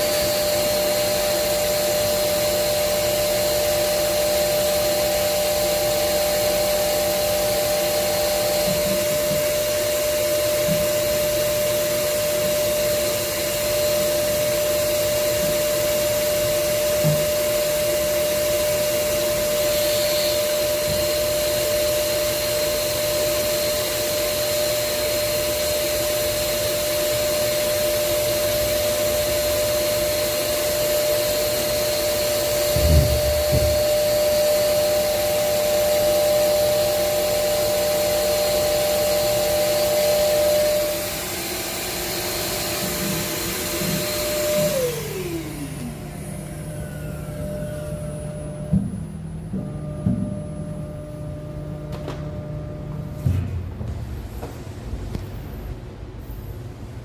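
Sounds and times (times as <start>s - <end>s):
tool grinder running: 0.0s - 49.0s
low knocks: 32.8s - 34.0s.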